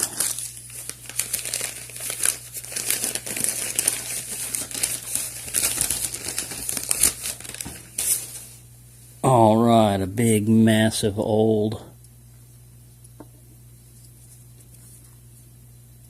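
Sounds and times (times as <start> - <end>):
packing material crinkling: 0.0 - 8.6.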